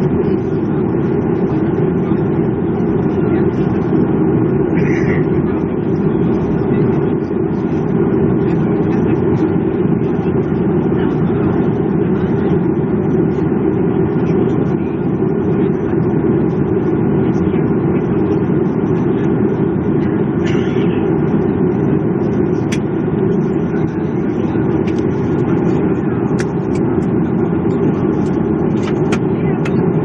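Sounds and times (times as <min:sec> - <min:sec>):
vehicle interior drone: 0:00.0 - 0:30.0.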